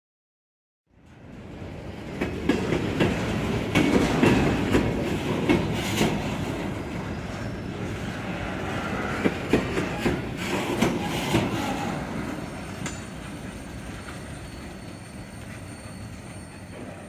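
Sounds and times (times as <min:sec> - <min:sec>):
train rumbling: 0:00.9 - 0:17.0
train wheels clicking over rail joints: 0:02.0 - 0:07.4, 0:09.0 - 0:17.0.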